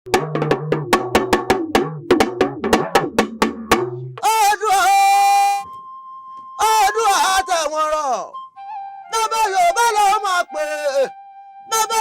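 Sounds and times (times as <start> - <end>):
bass line: 0.0 - 4.2
drum hits: 0.1 - 4.4
held wavering melodic note: 5.1 - 12.0.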